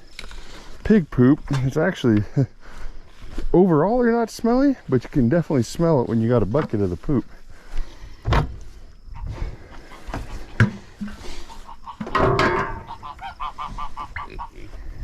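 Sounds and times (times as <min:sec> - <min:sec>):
loud harsh poultry call: 0:09.2 - 0:14.9.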